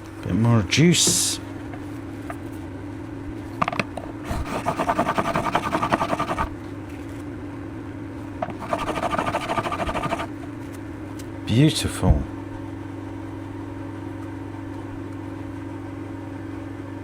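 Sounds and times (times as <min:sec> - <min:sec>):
blade scraping on sharpening plate: 0:04.3 - 0:06.5, 0:08.6 - 0:10.3.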